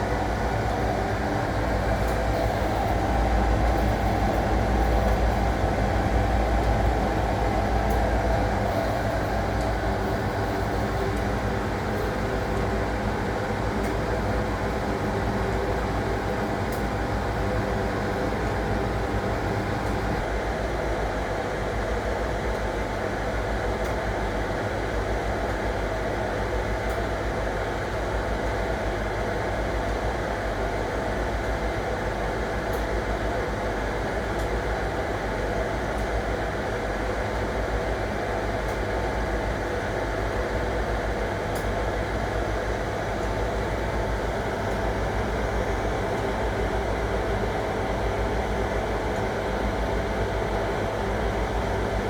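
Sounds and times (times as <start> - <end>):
washing machine motor hum: 0.0 - 20.2, 39.0 - 52.0.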